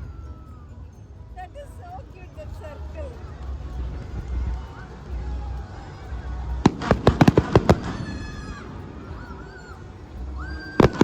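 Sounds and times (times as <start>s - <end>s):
fireworks bangs and crackles: 6.6s - 8.2s, 10.8s - 11.0s.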